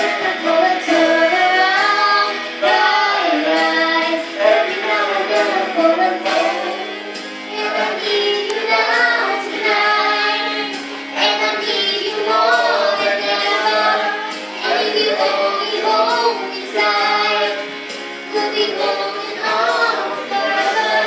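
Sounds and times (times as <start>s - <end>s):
backing music: 0.0s - 21.0s.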